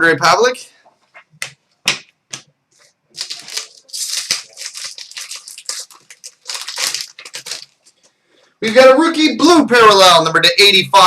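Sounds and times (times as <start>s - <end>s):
cards and wrappers rustling: 2.8s - 8.2s.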